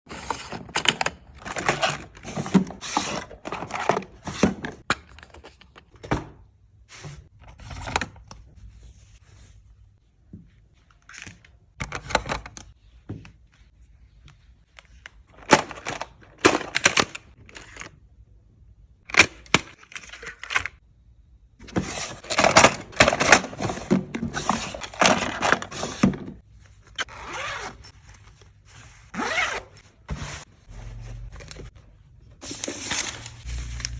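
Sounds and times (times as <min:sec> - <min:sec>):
packaging rustling and tearing: 0:32.4 - 0:33.9.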